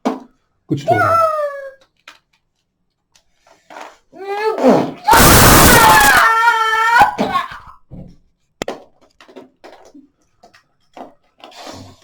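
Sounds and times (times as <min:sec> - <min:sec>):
child wailing cry: 0:05.1 - 0:07.7.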